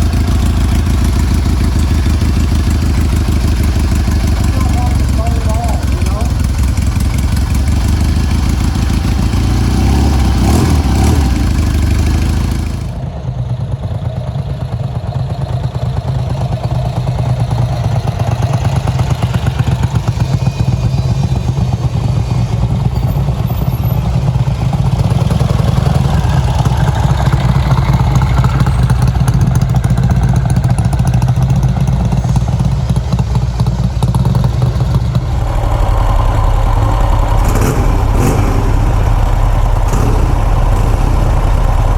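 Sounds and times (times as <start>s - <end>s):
motorcycle engine droning: 0.0s - 41.9s.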